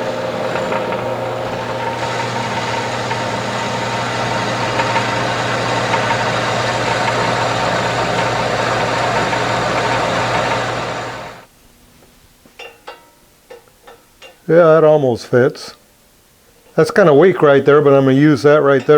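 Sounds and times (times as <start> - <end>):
milling machine running: 0.0 - 11.5.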